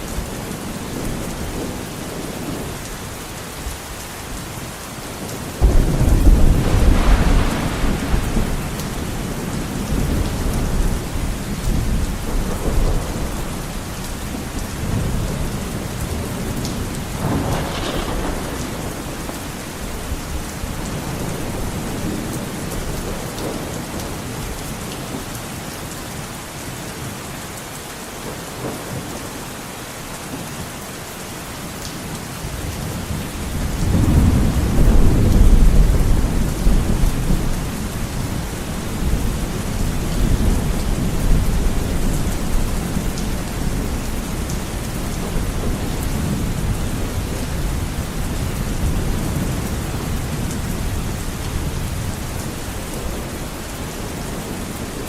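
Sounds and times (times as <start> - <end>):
heavy rain on a window: 0.0 - 55.0
thunder rumbling: 5.6 - 24.5, 32.7 - 53.9.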